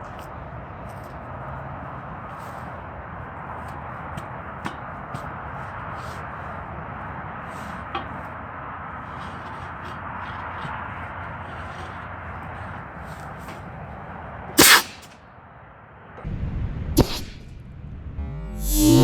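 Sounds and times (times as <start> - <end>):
compressed air blast: 14.6 - 15.2, 17.0 - 17.5, 18.6 - 19.0
steady air hiss: 14.6 - 15.2.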